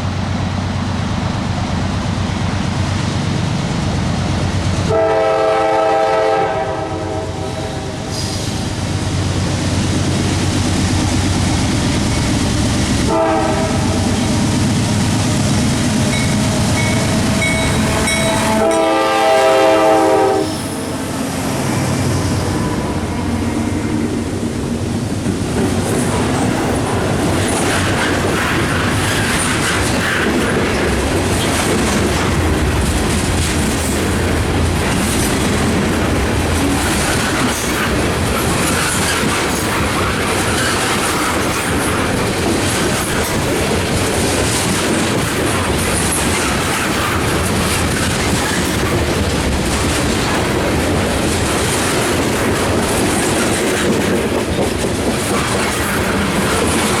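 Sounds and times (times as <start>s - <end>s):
train wheels clacking on rails: 8.0s - 57.0s.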